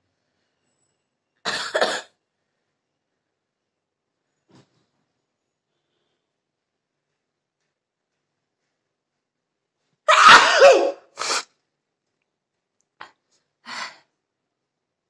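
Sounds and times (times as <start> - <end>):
woman sneezing: 10.1 - 11.5.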